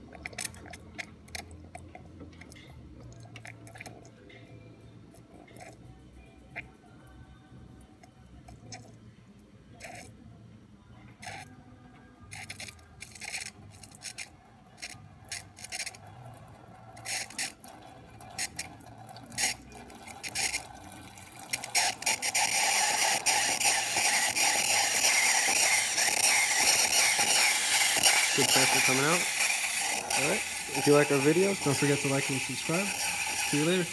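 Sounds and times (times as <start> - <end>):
steam wand popping and spitting: 21.5 - 33.9
steam hissing: 21.6 - 33.9.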